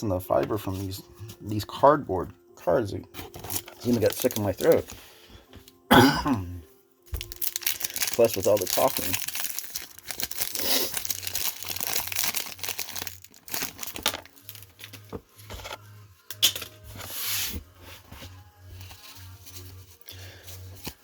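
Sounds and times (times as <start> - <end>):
cardboard cards rustling: 3.2 - 5.8, 7.2 - 15.8, 18.2 - 21.0
wax paper pack tearing: 3.3 - 5.0, 7.2 - 14.8.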